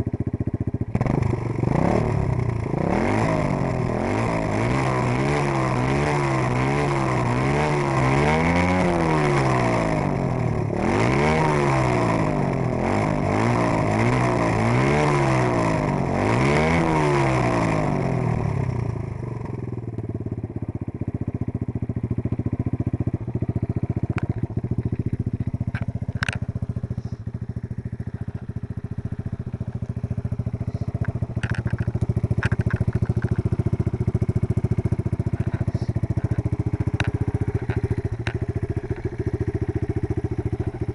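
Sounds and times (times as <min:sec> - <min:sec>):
motorcycle engine revving: 0:00.0 - 0:40.9
sharp clicks: 0:30.9 - 0:33.5.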